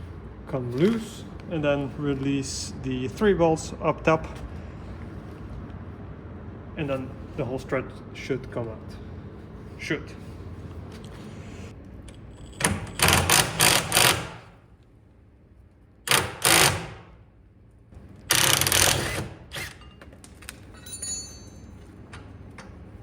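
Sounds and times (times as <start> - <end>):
impact wrench rattling: 12.8 - 14.5.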